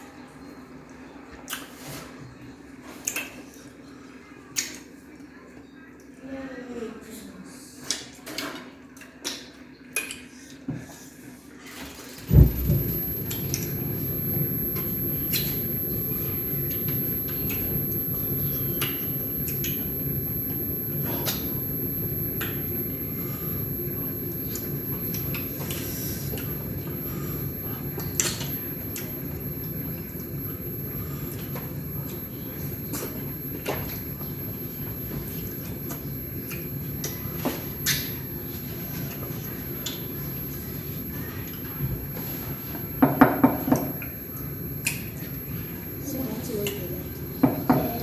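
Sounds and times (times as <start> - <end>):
steady low hum: 12.2 - 48.0
loud thump: 12.3 - 13.0
steady low rumble: 12.3 - 21.0.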